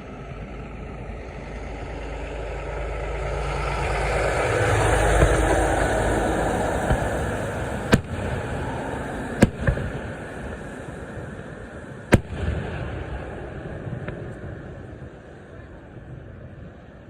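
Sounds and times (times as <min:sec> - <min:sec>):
steady rumble: 0:00.0 - 0:17.0
fireworks bangs: 0:04.8 - 0:16.9.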